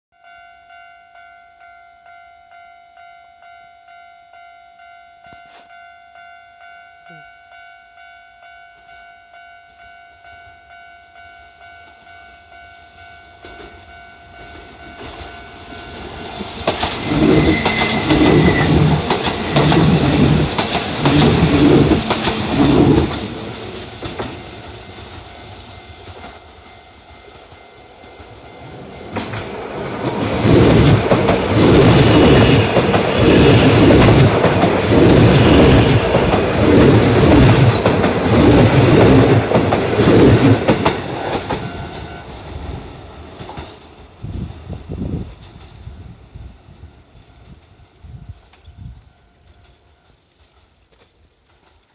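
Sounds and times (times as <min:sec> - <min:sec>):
train wheels clattering: 0:13.4 - 0:44.0
level-crossing alarm: 0:17.0 - 0:22.5.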